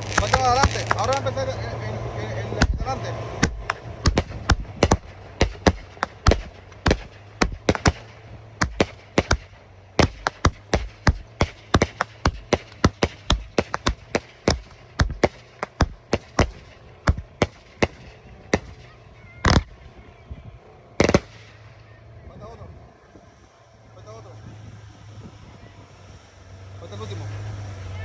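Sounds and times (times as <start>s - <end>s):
fireworks bangs: 0.0s - 1.6s, 2.4s - 20.0s, 21.0s - 21.8s.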